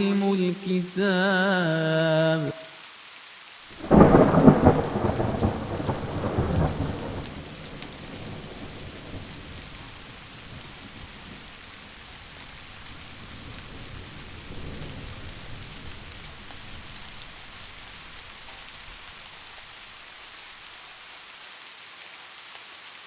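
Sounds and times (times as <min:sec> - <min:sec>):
steady rain falling: 0:00.0 - 0:23.0
thunderclap rumbling: 0:03.8 - 0:19.1.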